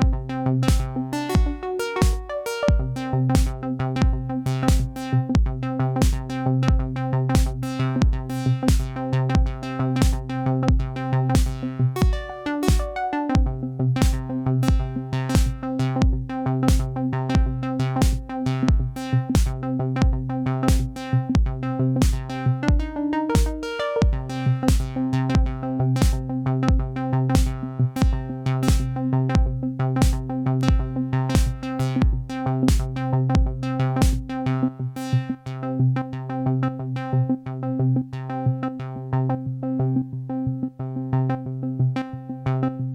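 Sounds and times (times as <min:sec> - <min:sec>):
drum machine kick and hi-hat: 0:00.0 - 0:34.4.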